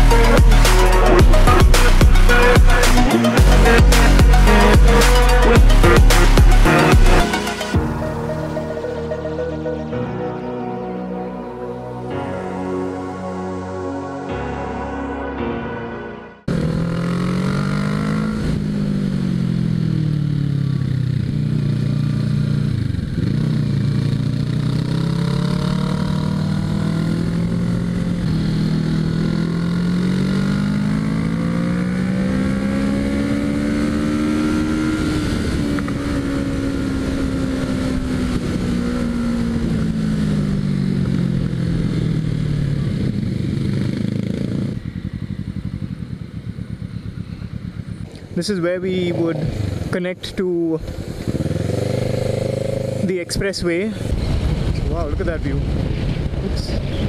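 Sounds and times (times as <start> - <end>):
motorcycle engine running: 16.5 - 57.0.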